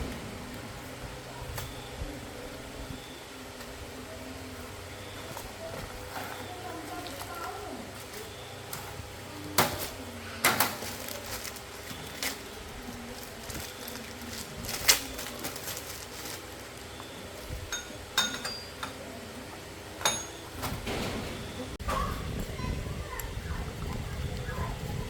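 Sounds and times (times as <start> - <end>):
steady low hum: 0.0 - 25.0
metal tools clinking: 17.7 - 19.0, 20.0 - 20.7.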